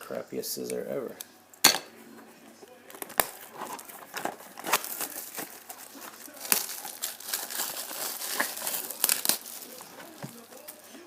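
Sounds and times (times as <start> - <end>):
plastic wrapping crinkling and tearing: 2.7 - 11.0.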